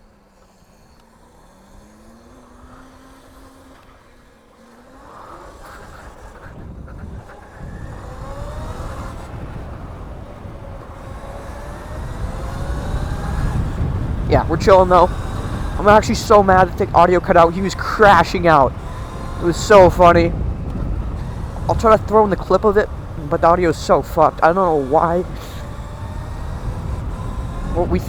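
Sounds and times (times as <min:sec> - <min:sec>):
electric scooter motor whine: 0:00.0 - 0:28.0
wind rumble on microphone: 0:05.7 - 0:28.0.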